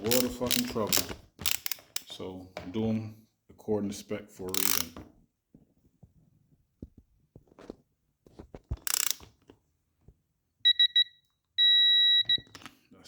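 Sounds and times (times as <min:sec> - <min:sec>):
tool clicking and knocking on bolt: 0:00.0 - 0:02.9, 0:04.5 - 0:05.1, 0:08.8 - 0:09.4
torque wrench beeping: 0:04.5 - 0:04.9, 0:08.9 - 0:09.2, 0:10.7 - 0:12.4.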